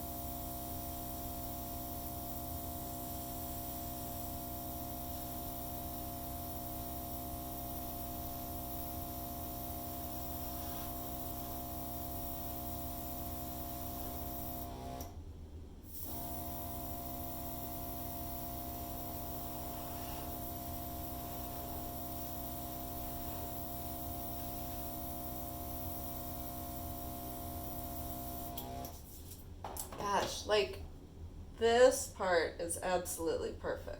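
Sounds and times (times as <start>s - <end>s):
hairdryer running: 28.4s - 28.9s.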